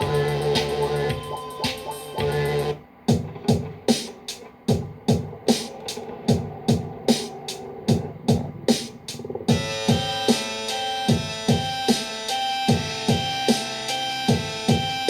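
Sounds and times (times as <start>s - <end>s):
kick drum: 3.1s - 3.9s, 4.7s - 5.4s, 7.9s - 8.7s, 9.5s - 10.2s, 11.1s - 11.8s, 12.7s - 13.4s, 14.3s - 15.0s.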